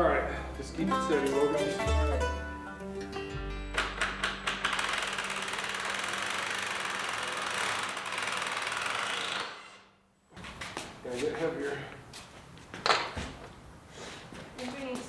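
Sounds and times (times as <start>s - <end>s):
handheld power tool chattering: 3.7s - 9.6s.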